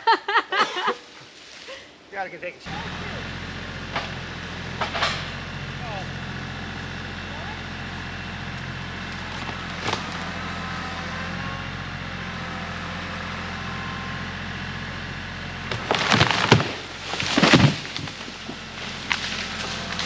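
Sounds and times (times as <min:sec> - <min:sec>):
tractor engine under load: 0:02.6 - 0:20.0
wood cracking and splintering: 0:09.1 - 0:10.3, 0:15.6 - 0:20.0.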